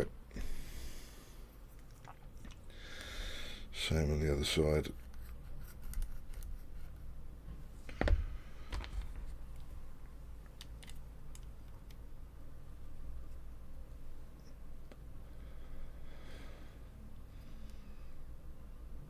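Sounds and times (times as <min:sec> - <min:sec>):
plastic parts knocking and clicking: 0:07.9 - 0:09.3.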